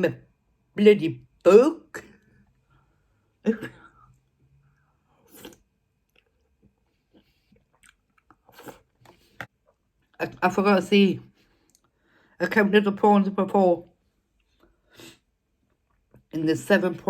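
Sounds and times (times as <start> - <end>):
person chewing noodles: 4.8 - 10.2.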